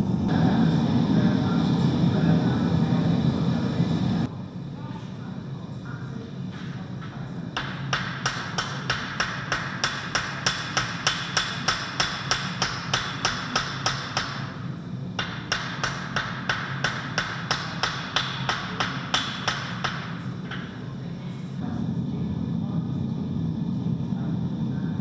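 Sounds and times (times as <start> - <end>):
hammer striking hot metal on anvil: 7.6 - 14.6, 15.2 - 20.8.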